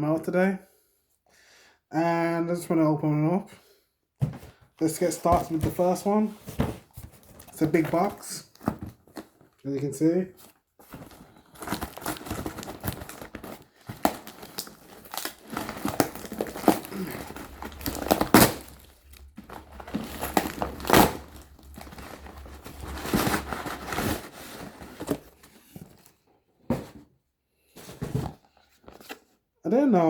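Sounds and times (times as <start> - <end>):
packaging crinkling and rustling: 4.9 - 26.2.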